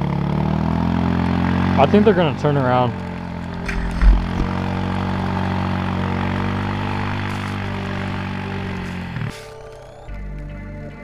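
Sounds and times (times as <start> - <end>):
quad engine running: 0.0 - 10.5
low thump: 3.7 - 4.7.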